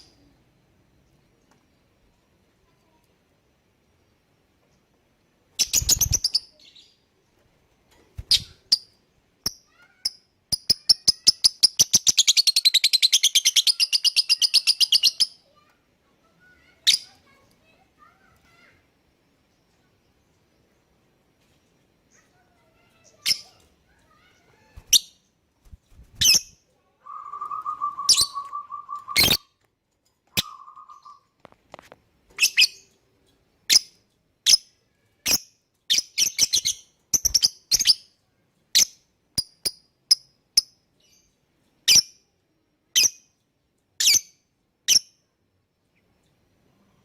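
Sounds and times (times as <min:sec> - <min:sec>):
lovebird chirping: 0:05.5 - 0:07.1, 0:08.2 - 0:15.4, 0:23.0 - 0:29.5, 0:30.3 - 0:31.4, 0:32.3 - 0:38.1.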